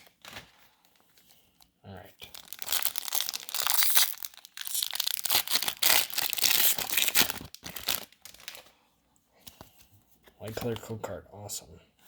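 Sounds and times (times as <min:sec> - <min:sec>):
foil wrapper crinkling and tearing: 0:02.2 - 0:08.7.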